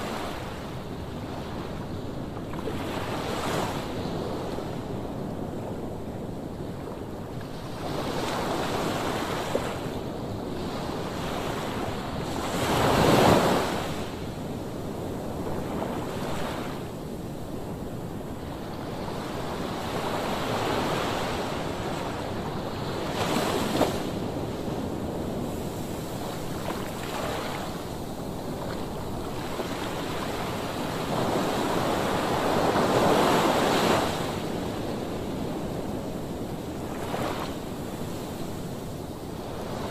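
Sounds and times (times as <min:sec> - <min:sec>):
sea waves breaking on shore: 0:19.0 - 0:39.9.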